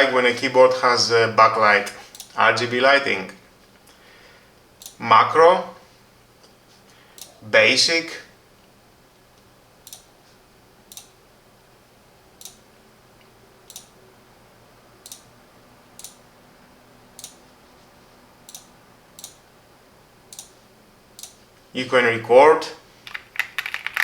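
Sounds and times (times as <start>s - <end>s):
computer mouse clicking: 2.1s - 2.4s, 10.9s - 11.1s, 13.7s - 13.9s, 15.0s - 15.3s, 16.0s - 16.2s, 17.2s - 17.4s, 18.5s - 19.4s, 20.3s - 20.6s, 21.2s - 21.4s.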